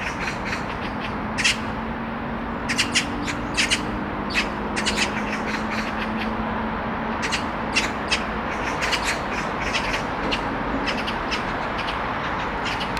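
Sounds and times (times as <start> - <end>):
high chirping bird calls: 2.6 - 6.4, 7.2 - 12.9.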